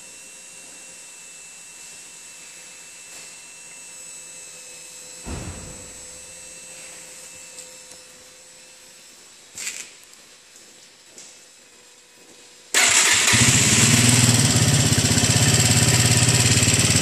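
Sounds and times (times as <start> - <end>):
motorcycle fuel pump hum and whine: 0.0 - 9.6, 12.7 - 17.0
low thump: 5.2 - 6.2.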